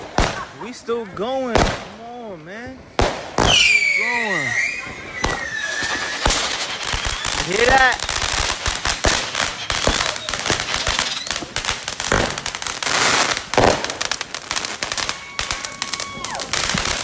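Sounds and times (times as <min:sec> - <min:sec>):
firecrackers popping: 0:00.0 - 0:02.1, 0:02.8 - 0:17.0
loud bangs: 0:03.0 - 0:15.8
whistling tone dropping in pitch: 0:03.6 - 0:08.2.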